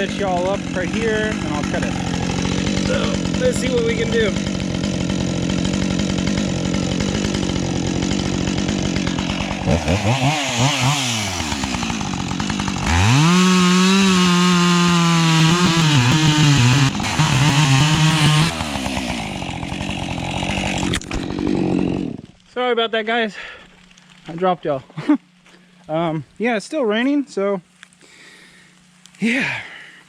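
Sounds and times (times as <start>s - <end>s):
chainsaw idling and revving: 0.0s - 22.4s
chainsaw cutting through log: 0.0s - 22.5s.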